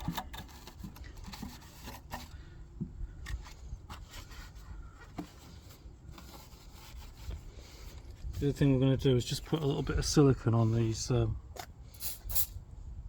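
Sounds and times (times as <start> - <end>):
cloth rubbing on plastic: 3.4 - 8.8.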